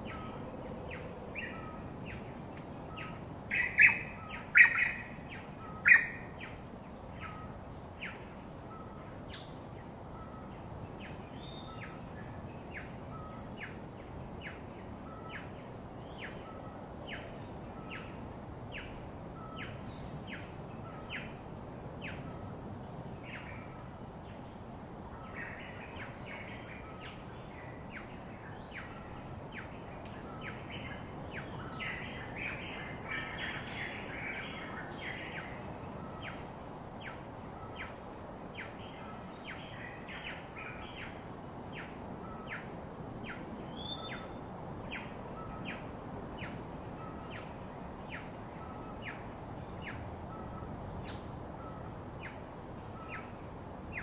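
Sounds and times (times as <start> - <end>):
low background hiss: 0.0 - 54.0
birds chirping: 2.9 - 6.6.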